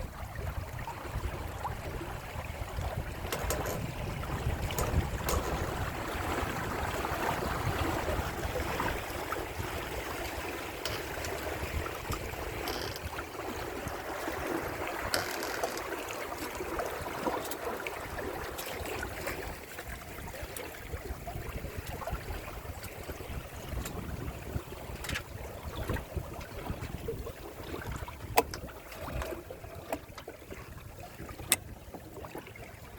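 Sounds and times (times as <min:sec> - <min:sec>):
water splashing along boat hulls: 0:00.0 - 0:32.9
wind rumbling on microphone: 0:00.0 - 0:32.9.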